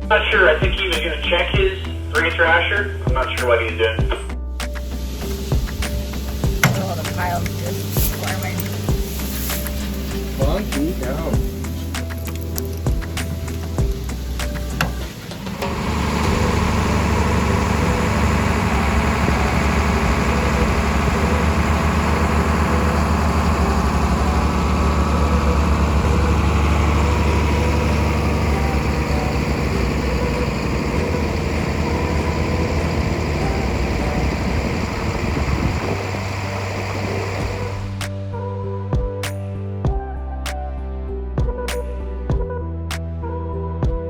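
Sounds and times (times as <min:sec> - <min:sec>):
heavy diesel engine running: 0:04.8 - 0:38.1.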